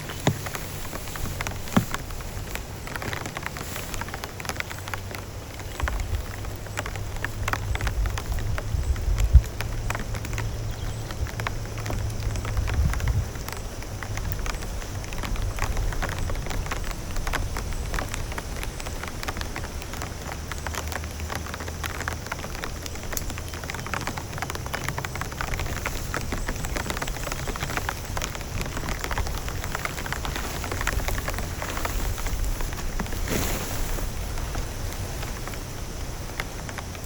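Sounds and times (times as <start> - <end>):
heavy rain: 0.0 - 37.0.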